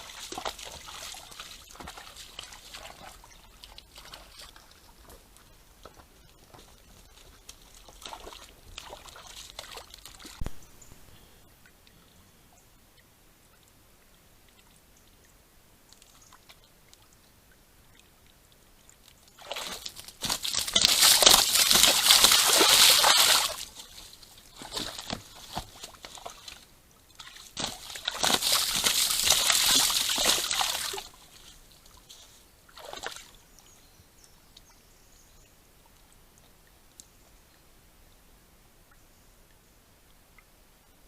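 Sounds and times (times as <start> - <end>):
mud and water sloshing: 0.0 - 10.6, 19.0 - 33.6.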